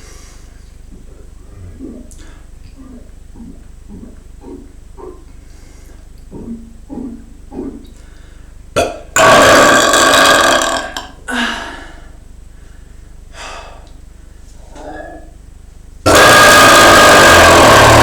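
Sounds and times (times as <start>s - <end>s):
person gulping air: 0.9s - 8.2s
person belching loudly: 8.8s - 11.2s, 16.1s - 18.0s.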